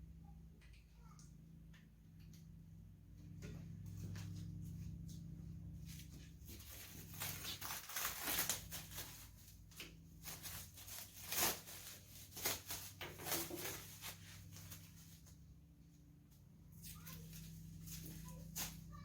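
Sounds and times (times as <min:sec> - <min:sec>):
faint low hum: 0:00.0 - 0:19.0
masking tape peeling: 0:06.6 - 0:09.5, 0:10.2 - 0:15.2.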